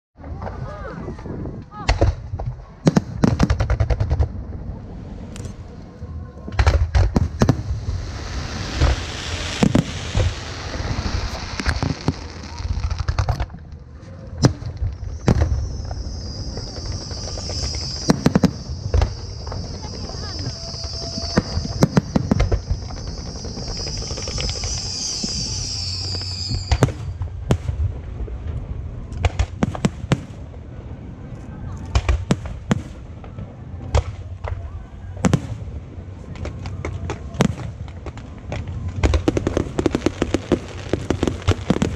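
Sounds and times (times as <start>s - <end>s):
fireworks banging: 1.8s - 4.5s, 6.4s - 28.6s, 31.9s - 41.9s
fireworks crackling hiss: 6.6s - 28.4s, 35.2s - 41.9s.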